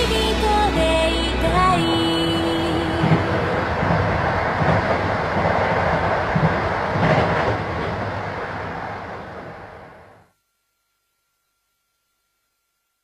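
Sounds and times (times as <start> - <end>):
train rumbling on rails: 0.0 - 10.2.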